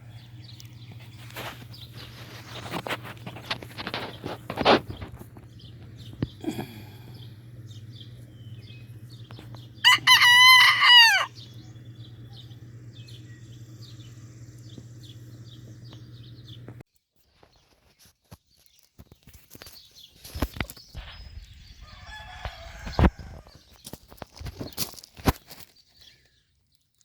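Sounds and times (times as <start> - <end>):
steady low hum: 0.0 - 16.8
rooster crowing: 9.8 - 11.7, 21.8 - 23.5.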